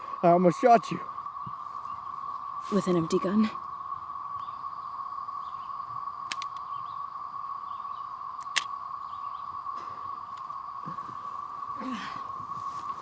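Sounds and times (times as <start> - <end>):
constant high drone: 0.0 - 13.0
sharp clicks: 6.2 - 6.7, 8.4 - 8.8.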